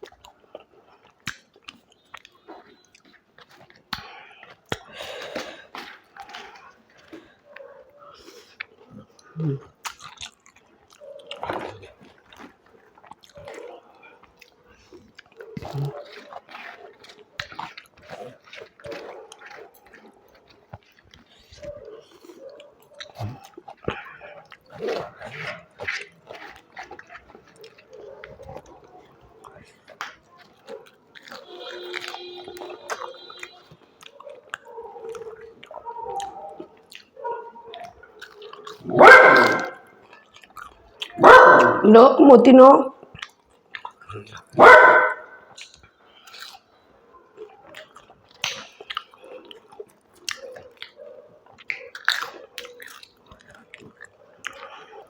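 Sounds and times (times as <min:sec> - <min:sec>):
person chewing crunchy food: 0:00.0 - 0:41.8, 0:43.0 - 0:55.0
wet mouth sounds: 0:00.0 - 0:46.7, 0:47.4 - 0:55.0
dog barking: 0:07.5 - 0:08.2, 0:10.9 - 0:11.8, 0:21.6 - 0:23.4, 0:27.6 - 0:29.0, 0:30.7 - 0:39.9, 0:41.2 - 0:41.9, 0:44.6 - 0:45.5, 0:50.3 - 0:51.3.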